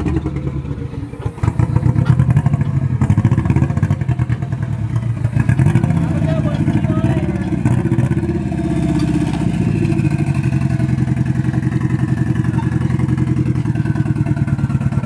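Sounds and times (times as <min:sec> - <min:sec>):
engine pulsing through open pipe: 0:00.0 - 0:15.0.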